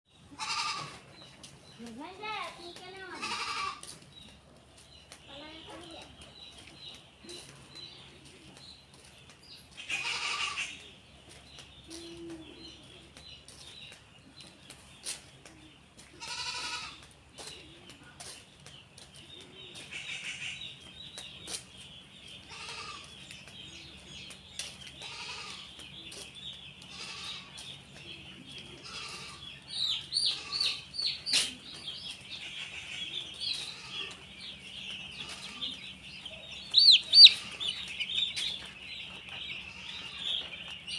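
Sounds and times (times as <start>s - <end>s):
chickens calling: 0.1s - 40.9s
chicken squawks: 36.7s - 37.8s.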